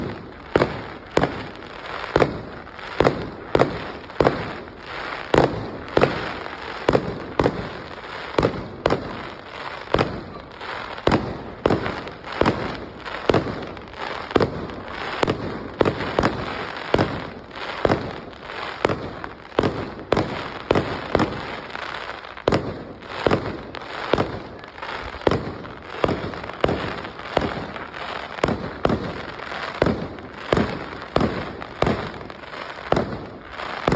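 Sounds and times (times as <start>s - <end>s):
fireworks banging: 0.0s - 33.9s
fireworks crackling hiss: 0.0s - 33.9s.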